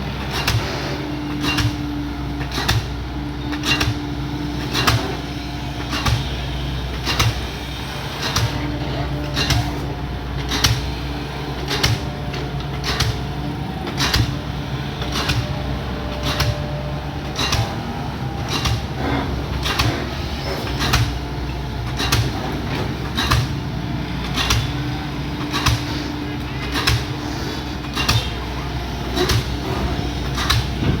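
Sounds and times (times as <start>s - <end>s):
excavator diesel engine running: 0.0s - 31.0s.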